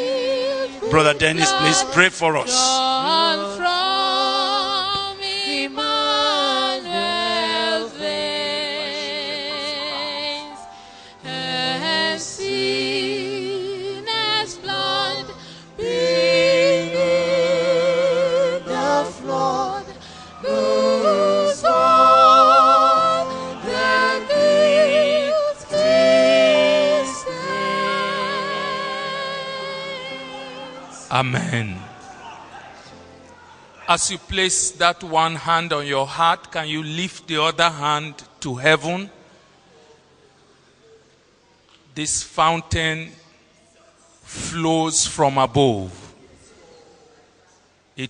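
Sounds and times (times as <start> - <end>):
person singing with vibrato: 0.0 - 31.9.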